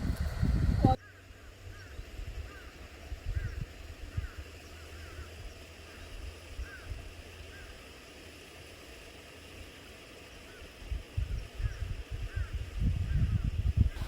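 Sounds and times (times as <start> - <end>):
low wind rumble: 0.0 - 7.6, 10.8 - 14.0.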